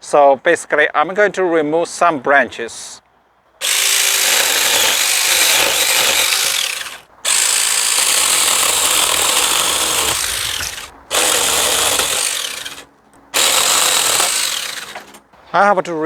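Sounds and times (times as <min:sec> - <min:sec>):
power saw cutting branches: 0:03.6 - 0:15.3.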